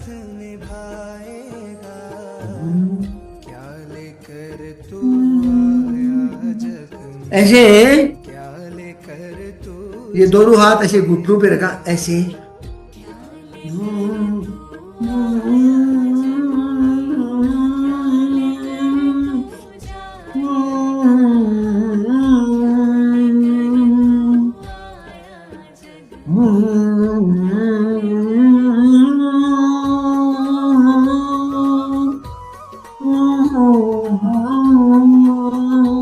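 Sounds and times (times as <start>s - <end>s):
person singing devotional song: 0.0s - 36.0s.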